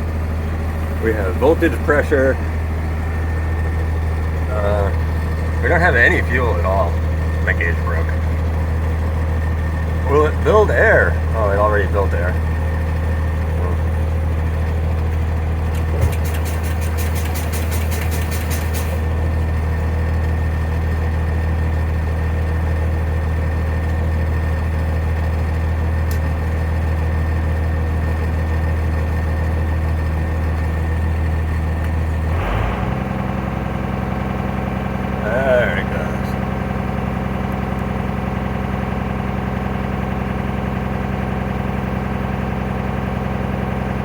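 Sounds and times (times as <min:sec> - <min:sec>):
diesel engine idling: 0:00.0 - 0:44.0
rapid ticking: 0:15.8 - 0:19.2.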